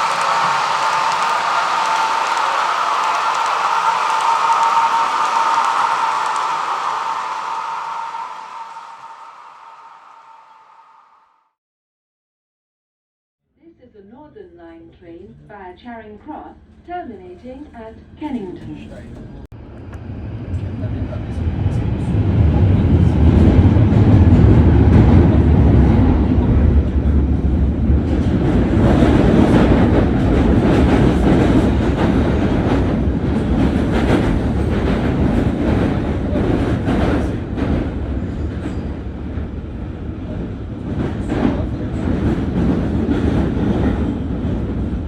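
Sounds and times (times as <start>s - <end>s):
underground train rumble: 17.7s - 45.0s.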